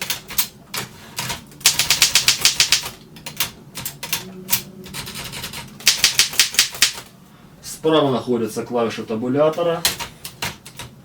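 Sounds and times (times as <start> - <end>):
typewriter keys clicking: 1.2 - 7.1.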